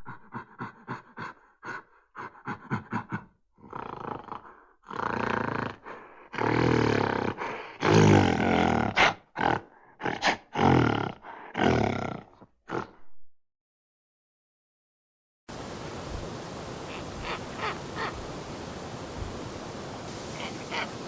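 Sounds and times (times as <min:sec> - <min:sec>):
animal grunts: 0:03.6 - 0:13.0, 0:16.9 - 0:18.4, 0:20.0 - 0:21.0.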